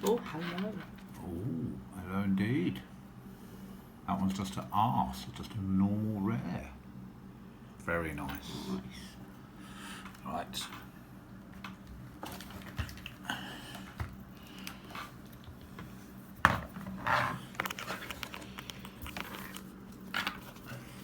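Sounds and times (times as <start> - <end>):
handling clicks and rustles: 0.0 - 1.2, 10.0 - 21.0
steady low hum: 0.0 - 21.0.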